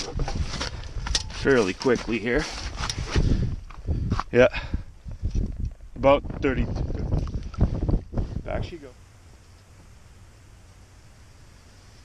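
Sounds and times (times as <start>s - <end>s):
faint steady hiss: 8.5s - 12.0s.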